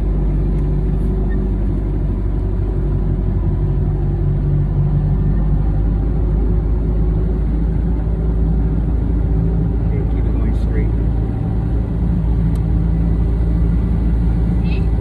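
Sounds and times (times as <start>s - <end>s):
motorboat engine running: 0.0s - 15.0s.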